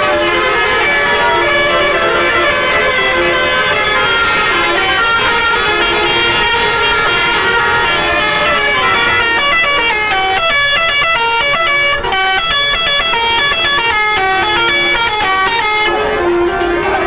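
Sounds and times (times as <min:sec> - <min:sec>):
bus horn playing a melody: 0:00.0 - 0:17.0.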